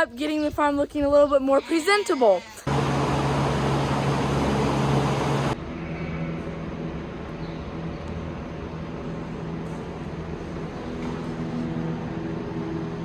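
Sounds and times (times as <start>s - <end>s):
engine running: 2.7s - 5.6s.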